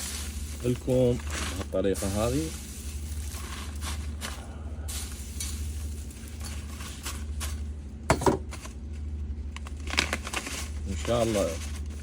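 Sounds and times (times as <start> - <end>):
dried herbs rustling: 0.0 - 12.0
steady low hum: 0.0 - 12.0
small knocks: 8.1 - 8.6.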